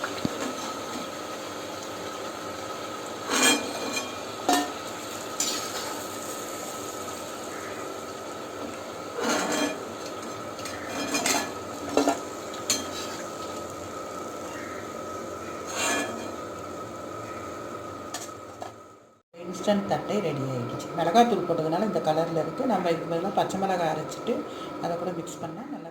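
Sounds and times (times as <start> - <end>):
food sizzling in hot oil: 0.0 - 19.0.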